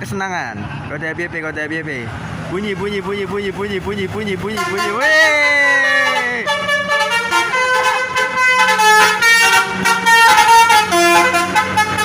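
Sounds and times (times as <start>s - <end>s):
bus horn playing a tune: 4.5s - 12.0s.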